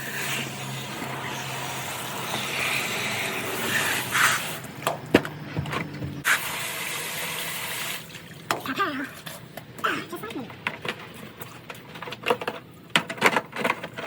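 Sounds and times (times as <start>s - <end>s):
air hose hissing: 0.0s - 4.7s
low motor hum: 0.0s - 6.2s.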